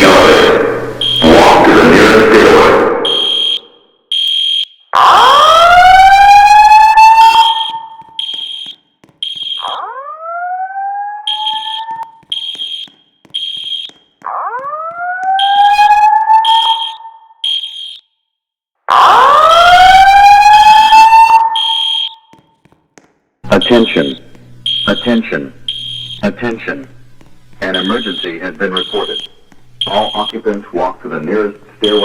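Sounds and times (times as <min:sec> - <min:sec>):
high-pitched fire alarm beeps: 0:00.2 - 0:01.6, 0:03.0 - 0:09.9, 0:11.2 - 0:14.2, 0:15.2 - 0:18.3, 0:19.0 - 0:22.6, 0:23.5 - 0:26.3, 0:27.6 - 0:30.5, 0:31.8 - 0:32.0.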